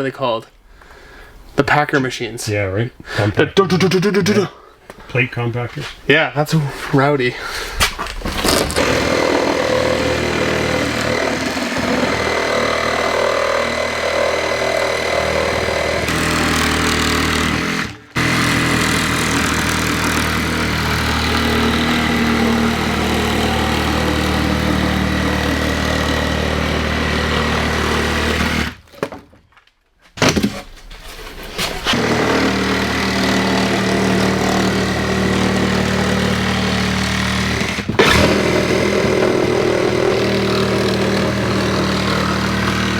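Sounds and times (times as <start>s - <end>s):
plywood rattling: 7.8s - 29.6s, 30.2s - 42.9s
electric saw cutting plywood: 8.2s - 28.9s, 31.8s - 42.9s.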